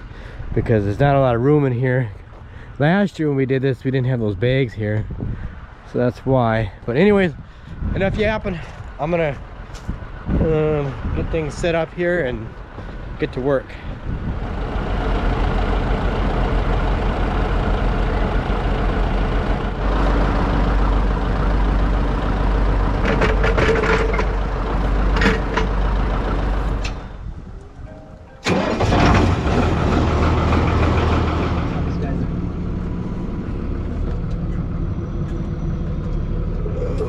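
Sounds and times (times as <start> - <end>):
farm machinery engine running: 14.4 - 27.3, 28.4 - 36.6.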